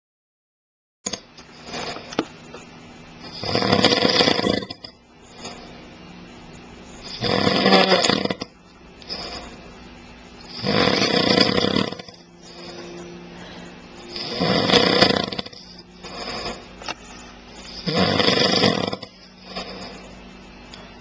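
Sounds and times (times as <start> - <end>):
man snoring: 1.1 - 2.2, 3.2 - 5.8, 7.0 - 9.7, 10.4 - 17.0, 17.6 - 20.2
quiet breaths: 3.1 - 7.7, 8.4 - 21.0.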